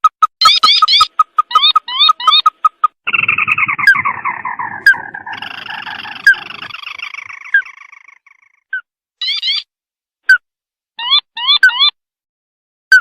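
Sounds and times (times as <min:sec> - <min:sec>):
bird chattering call: 0:00.1 - 0:08.6
sharp rising bird notes: 0:03.1 - 0:08.5.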